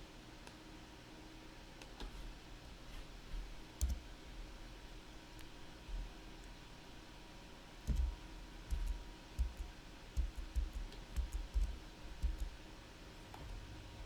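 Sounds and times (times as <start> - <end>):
mouse and keyboard clicking: 7.9 - 12.6.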